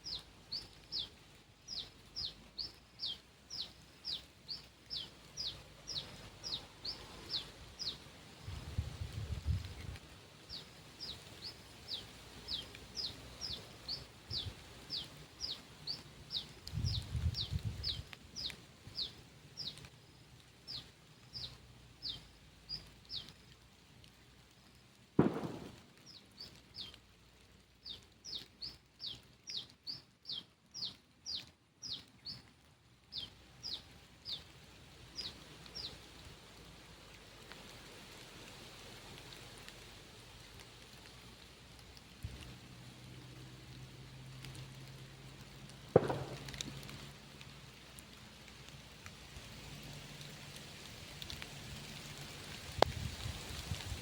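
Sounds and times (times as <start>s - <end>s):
bird chirping: 0.0s - 8.6s, 10.5s - 19.9s, 20.7s - 23.4s, 25.2s - 27.0s, 27.8s - 32.5s, 33.1s - 34.5s, 35.1s - 36.0s
low rumble on microphone: 8.4s - 10.0s, 16.7s - 18.1s
sharp thump: 25.2s - 25.8s, 46.0s - 46.6s.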